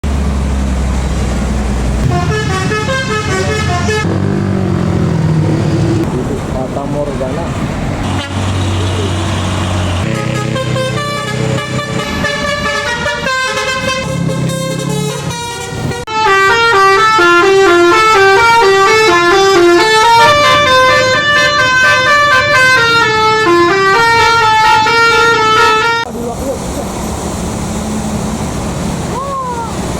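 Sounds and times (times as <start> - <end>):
low engine hum: 0.0 - 13.2
bus musical horn melody: 2.0 - 6.0, 8.0 - 26.1.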